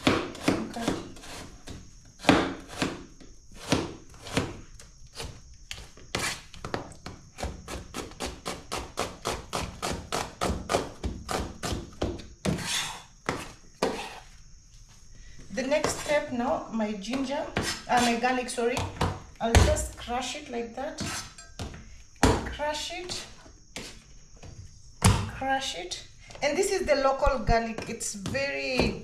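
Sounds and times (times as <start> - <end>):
knife chopping on wooden board: 2.2 - 3.0.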